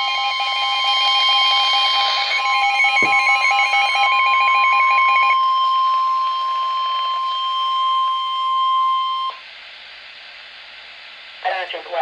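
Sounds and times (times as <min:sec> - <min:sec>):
steady alarm tone: 0:00.0 - 0:09.4
warbling beeps: 0:00.0 - 0:09.4.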